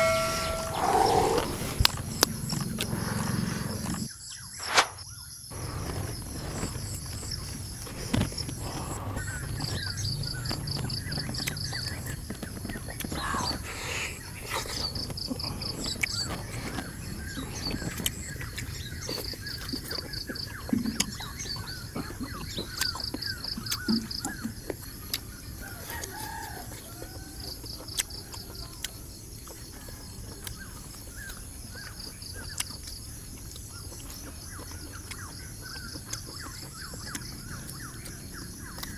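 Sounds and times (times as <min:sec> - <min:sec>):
high pulsing trill: 0:00.0 - 0:01.6.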